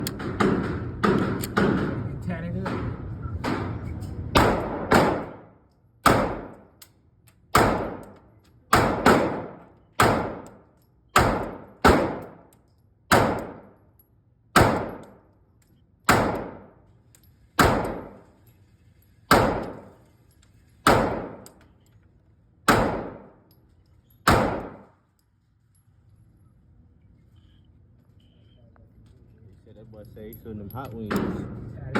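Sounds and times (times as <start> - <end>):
pistol shots echoing: 4.4 - 6.7, 7.5 - 12.5, 13.1 - 13.7, 14.6 - 15.2, 16.1 - 16.8, 17.6 - 18.2, 19.3 - 19.9, 20.8 - 21.6, 22.7 - 23.4, 24.2 - 24.9.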